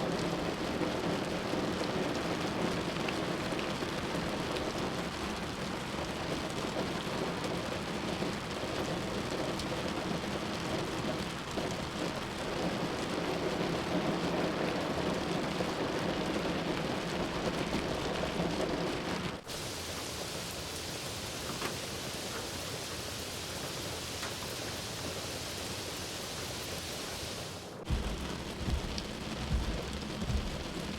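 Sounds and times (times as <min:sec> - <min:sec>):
heavy rain: 0:00.0 - 0:30.9
low rumble: 0:27.8 - 0:30.9.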